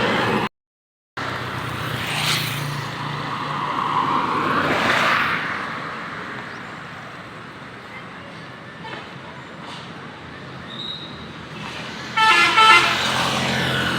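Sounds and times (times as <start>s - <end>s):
bus engine hum: 0.0s - 0.5s
road noise: 0.0s - 0.5s, 1.2s - 13.9s.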